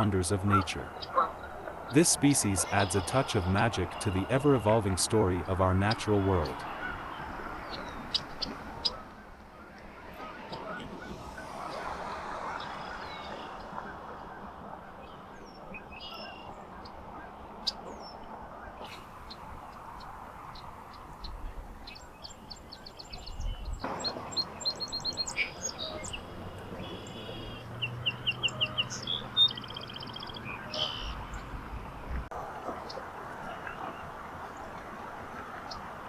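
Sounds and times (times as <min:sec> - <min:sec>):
small birds chirping: 0:18.8 - 0:31.8.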